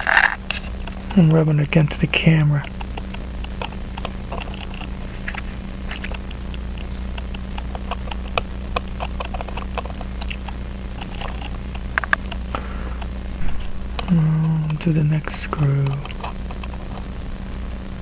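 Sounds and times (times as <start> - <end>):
small metallic clicks and scratches: 0.0 - 1.2, 2.6 - 12.4
steady low hum: 0.0 - 18.0.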